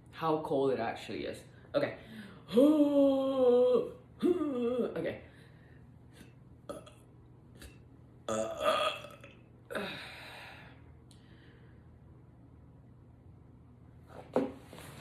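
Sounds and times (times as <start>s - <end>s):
woman burping: 4.2s - 5.0s, 6.7s - 7.0s, 8.3s - 10.1s.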